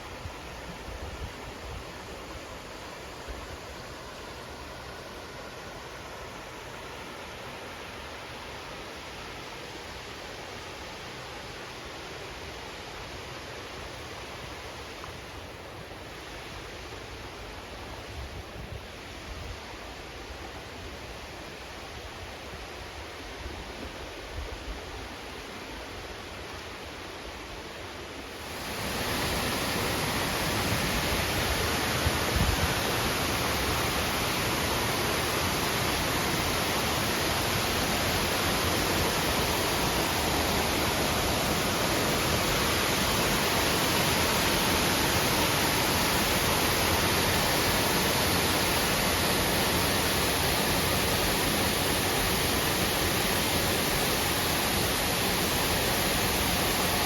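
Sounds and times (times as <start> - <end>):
waterfall rushing: 28.2 - 57.0.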